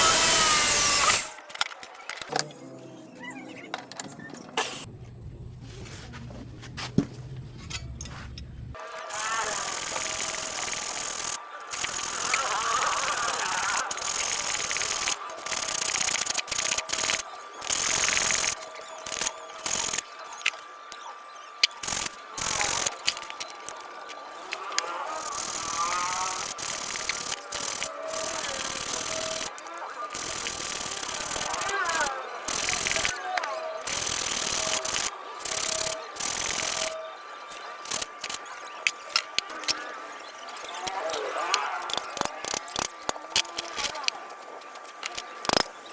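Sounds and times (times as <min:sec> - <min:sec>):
ratcheting clicks: 0:09.0 - 0:21.0, 0:21.6 - 0:39.8, 0:40.5 - 0:45.7
sharp metal click: 0:21.6 - 0:39.8, 0:40.5 - 0:44.2
metal parts rubbing: 0:21.7 - 0:33.1, 0:33.8 - 0:39.8, 0:40.5 - 0:45.7.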